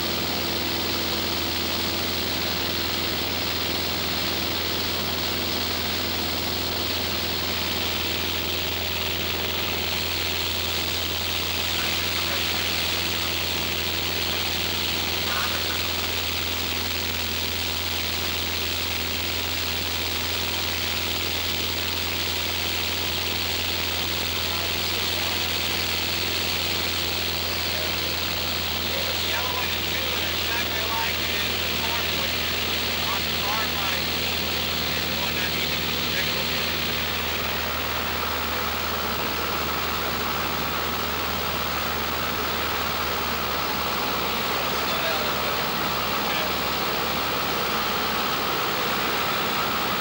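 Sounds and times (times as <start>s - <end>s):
small plane engine and propeller: 0.0s - 50.0s.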